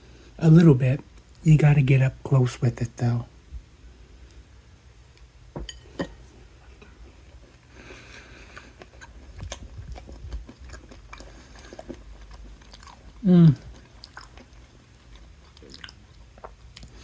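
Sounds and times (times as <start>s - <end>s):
person biting and chewing: 8.2s - 17.0s.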